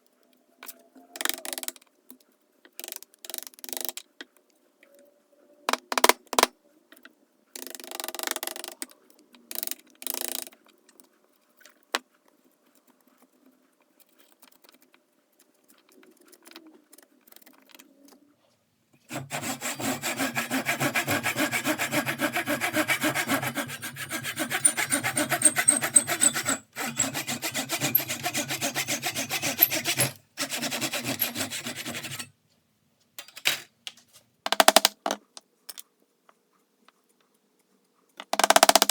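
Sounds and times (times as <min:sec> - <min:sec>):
saw cutting wood: 0:19.1 - 0:32.3.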